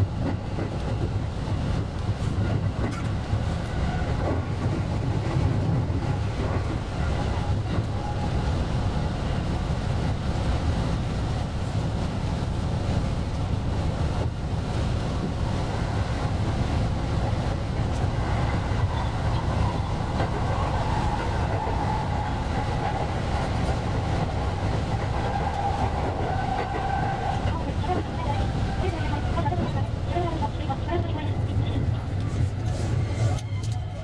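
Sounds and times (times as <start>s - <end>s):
electric train rumble: 0.0s - 34.0s
train whine: 0.0s - 34.0s.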